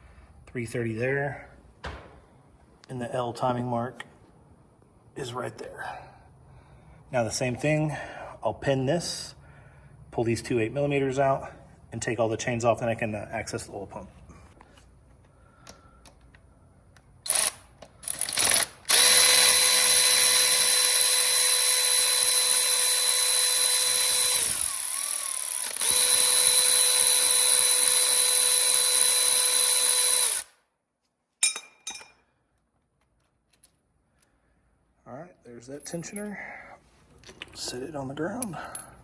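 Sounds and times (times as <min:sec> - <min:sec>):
cordless driver whining: 0:17.3 - 0:30.5.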